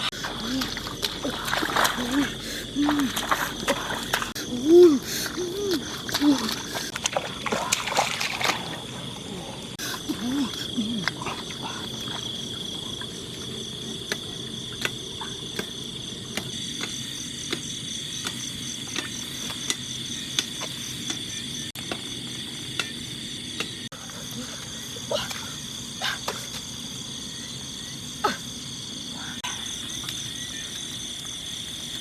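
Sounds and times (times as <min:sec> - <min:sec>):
insects trilling: 0:00.0 - 0:32.0.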